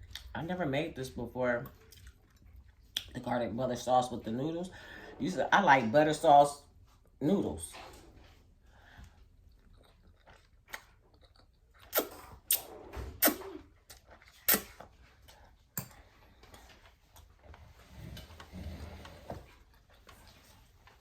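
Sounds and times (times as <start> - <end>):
sharp clicks and cracks of eating: 1.8 - 3.3, 9.5 - 16.6.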